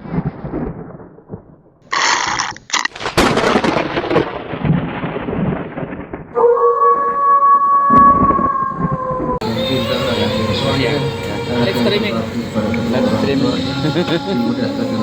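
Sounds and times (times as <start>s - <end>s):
thunder-like crash and rumble: 0.0s - 1.8s, 2.9s - 6.4s.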